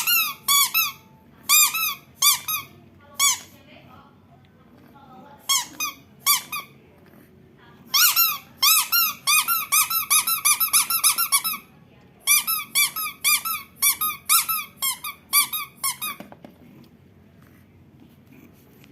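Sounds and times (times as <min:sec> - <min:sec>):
squeaky toy squeaking: 0:00.0 - 0:03.5, 0:05.4 - 0:06.8, 0:07.9 - 0:16.3.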